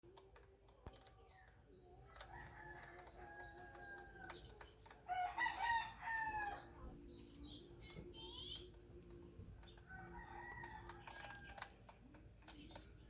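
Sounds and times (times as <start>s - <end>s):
roosters crowing: 2.0s - 7.0s, 9.6s - 11.9s.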